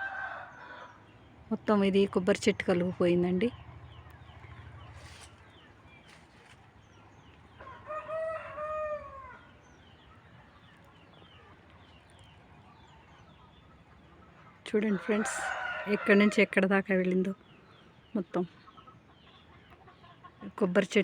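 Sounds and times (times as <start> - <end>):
rooster crowing: 0.0 - 1.0, 7.6 - 9.5, 14.9 - 16.4.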